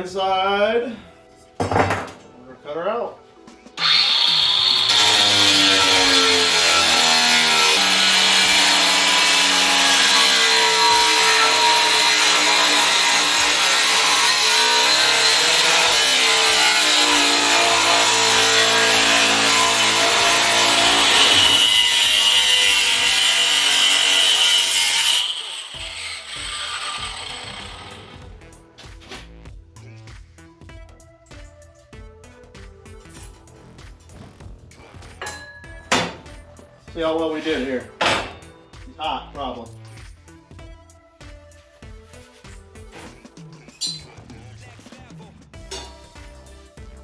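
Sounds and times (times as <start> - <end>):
angle grinder cutting sheet steel: 3.8 - 28.3, 37.0 - 39.6.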